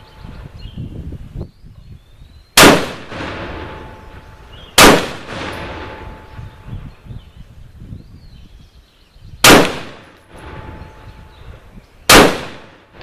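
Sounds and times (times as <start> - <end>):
gunshots with echo: 2.6 - 6.7, 9.4 - 11.0, 12.1 - 13.0.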